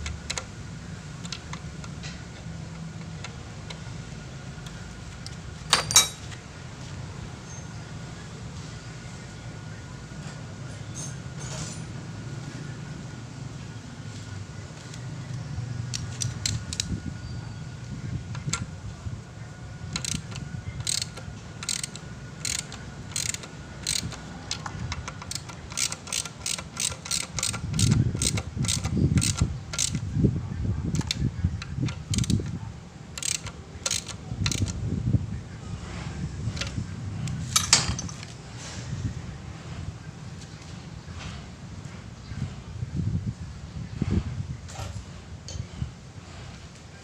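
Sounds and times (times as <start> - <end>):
hand tools clicking and clinking: 4.6 - 6.4, 15.9 - 16.9, 19.9 - 30.0, 31.0 - 32.6, 33.2 - 34.8, 36.6 - 38.4.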